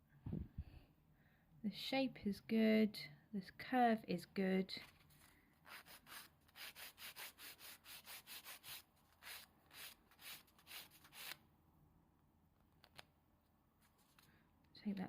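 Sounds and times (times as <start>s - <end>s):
nail file rasping: 5.6s - 11.4s.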